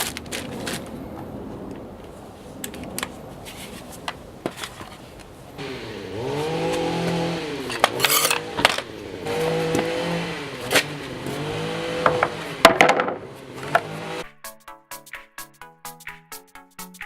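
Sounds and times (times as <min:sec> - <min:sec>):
reciprocating saw motor whine: 0:05.6 - 0:14.2
sharp knocks and clatter: 0:06.7 - 0:10.0, 0:12.0 - 0:14.0.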